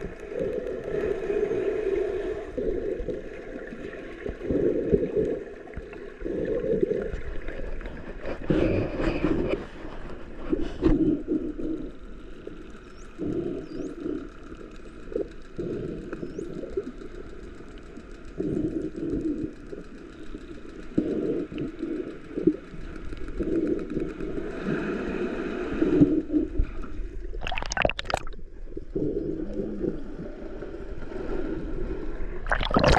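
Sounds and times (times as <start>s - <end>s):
dolphin calls and clicks: 0.0s - 27.2s
diver breathing underwater: 4.3s - 16.7s.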